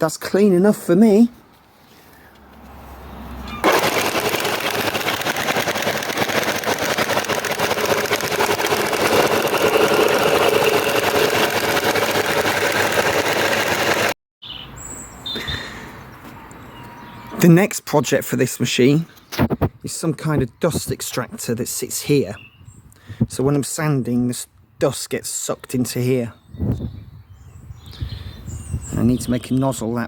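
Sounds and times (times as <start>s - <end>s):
belt sander whirring: 3.6s - 14.2s.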